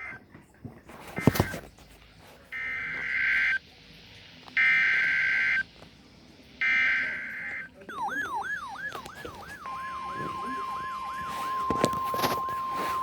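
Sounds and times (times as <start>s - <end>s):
digital data tones: 2.5s - 3.6s, 6.6s - 13.0s.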